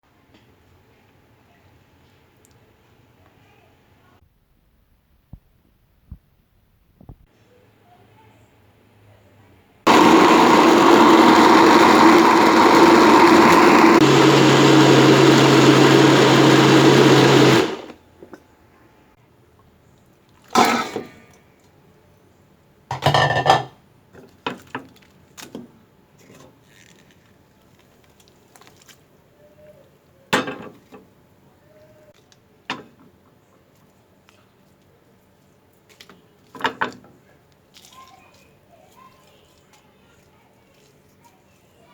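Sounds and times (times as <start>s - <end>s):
electric blender running: 9.9s - 18.0s.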